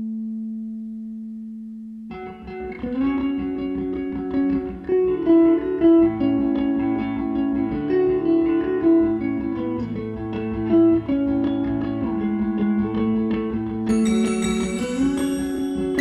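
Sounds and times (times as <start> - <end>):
guitar-led band playing: 2.2 - 16.0
held music note: 13.9 - 16.0.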